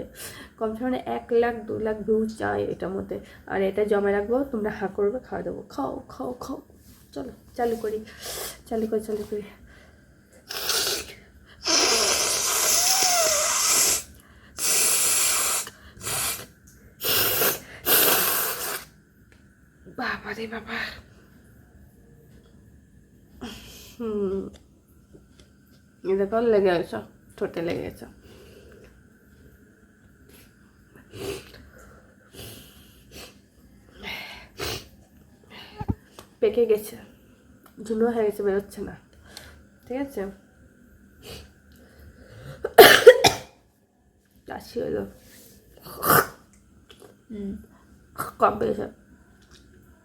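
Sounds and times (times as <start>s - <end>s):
woman blowing her nose: 10.5s - 18.9s.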